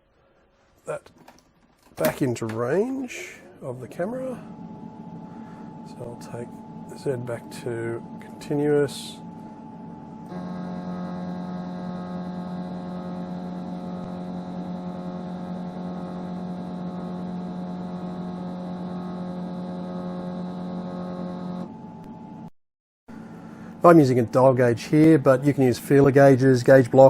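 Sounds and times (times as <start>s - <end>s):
stepper motor whine: 4.0s - 22.5s.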